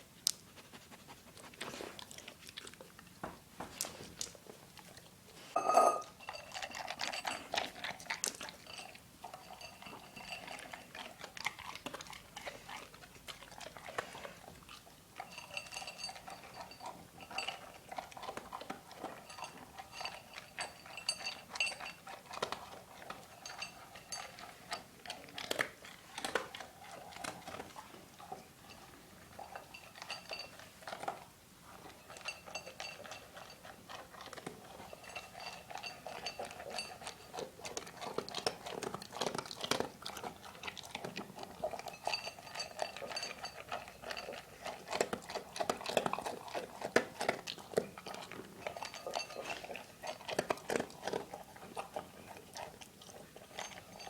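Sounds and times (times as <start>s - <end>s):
dog chewing and crunching: 0.1s - 54.0s
bowl knocking: 5.6s - 6.1s
food bowl clinking: 5.6s - 12.2s, 15.2s - 54.0s.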